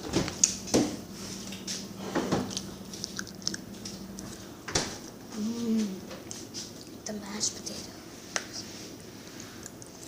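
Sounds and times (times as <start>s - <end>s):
steady low hum: 0.0s - 10.0s
chewing and biting food: 2.4s - 5.2s.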